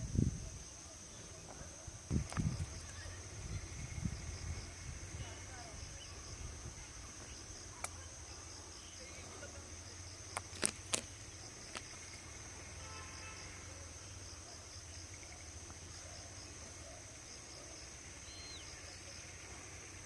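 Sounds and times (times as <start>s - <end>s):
insects shrilling chorus: 9.9s - 20.0s.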